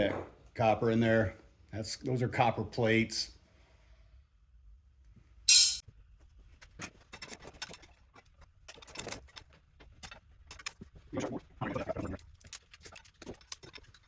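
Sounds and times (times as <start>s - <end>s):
metal parts and tools clattering: 5.5s - 5.8s, 6.8s - 10.9s.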